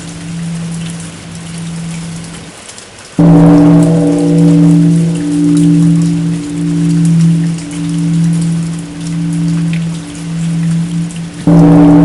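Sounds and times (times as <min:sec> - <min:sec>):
deep bell hum: 0:00.0 - 0:02.4, 0:03.2 - 0:12.0
steady rain patter: 0:00.0 - 0:12.0.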